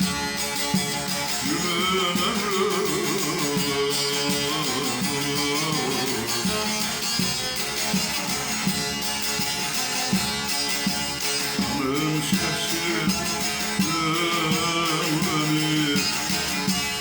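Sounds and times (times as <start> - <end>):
plucked string instrument strumming: 0.0 - 17.0.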